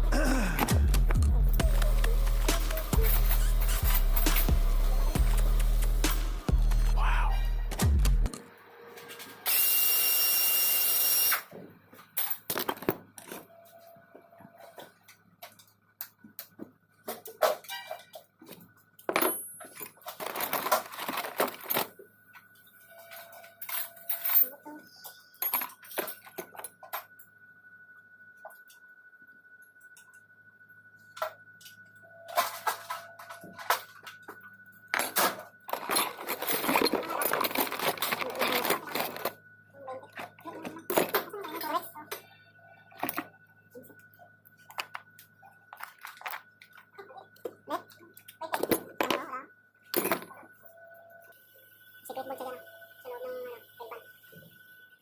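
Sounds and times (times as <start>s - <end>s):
power drill running: 9.4s - 11.5s
metal tools clinking and knocking: 19.0s - 21.9s, 23.0s - 27.1s, 34.9s - 39.4s.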